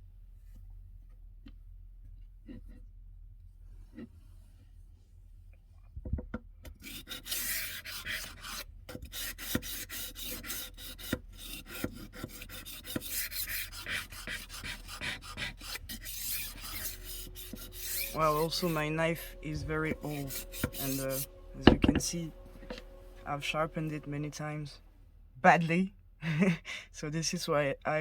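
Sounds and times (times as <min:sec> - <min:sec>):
knife sharpener grinding: 0:06.8 - 0:24.2.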